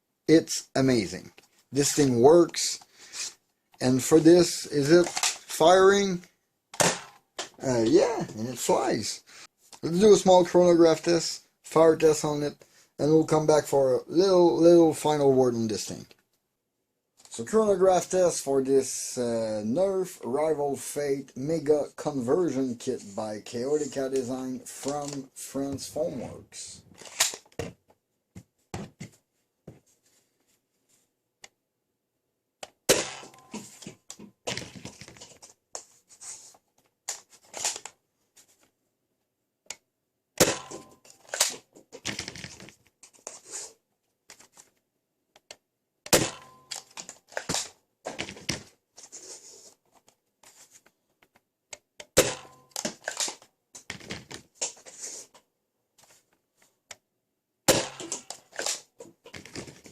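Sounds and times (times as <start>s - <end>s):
plastic clicks and rattles: 51.2s - 54.8s, 58.0s - 59.9s.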